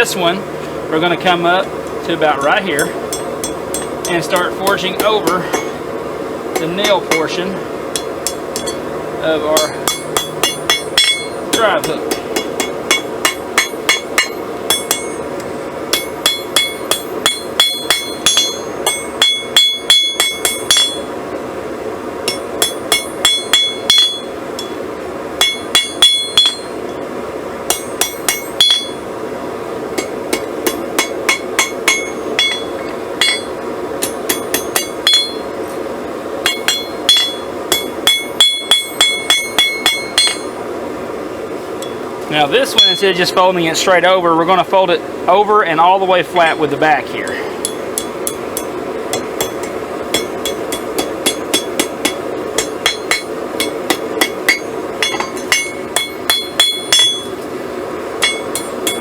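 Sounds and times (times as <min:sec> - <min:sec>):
steady rushing noise: 0:00.0 - 0:59.0
hammer ringing on anvil: 0:02.4 - 0:05.8, 0:06.6 - 0:08.8, 0:09.5 - 0:15.3, 0:15.9 - 0:21.1, 0:22.3 - 0:24.8, 0:25.4 - 0:26.8, 0:27.7 - 0:29.0, 0:30.0 - 0:35.5, 0:36.4 - 0:40.6, 0:42.7 - 0:43.0, 0:47.3 - 0:57.4, 0:58.2 - 0:59.0.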